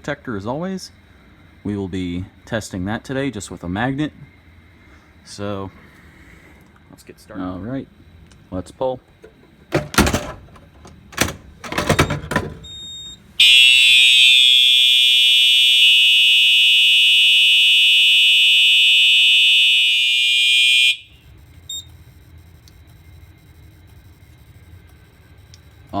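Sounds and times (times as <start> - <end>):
pull station clacks: 9.3 - 12.7
buzzy continuous alarm horn: 13.3 - 21.4.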